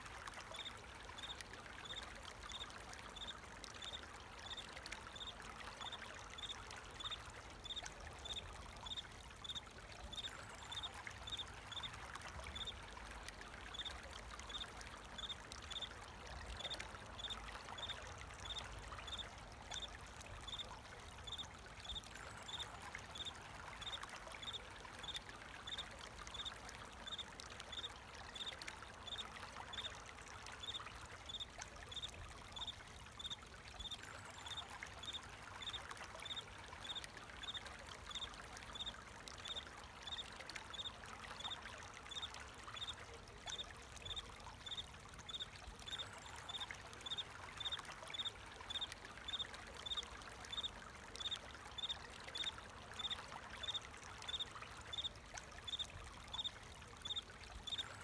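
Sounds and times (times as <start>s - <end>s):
water trickling: 0.0s - 58.0s
cricket chirping: 47.0s - 55.1s, 56.4s - 57.9s.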